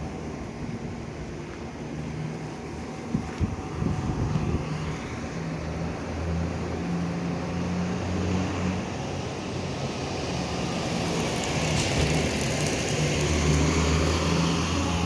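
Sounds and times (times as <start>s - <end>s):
street traffic: 0.0s - 15.0s.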